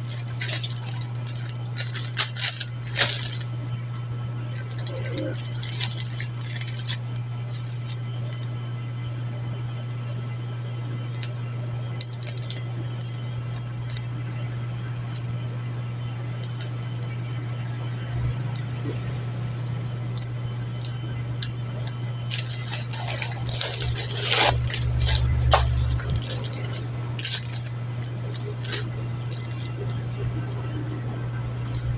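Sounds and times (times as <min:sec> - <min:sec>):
plastic packaging crinkling: 0:00.0 - 0:08.6, 0:11.1 - 0:14.2, 0:20.1 - 0:30.8, 0:31.6 - 0:31.9
low hum: 0:00.0 - 0:31.9.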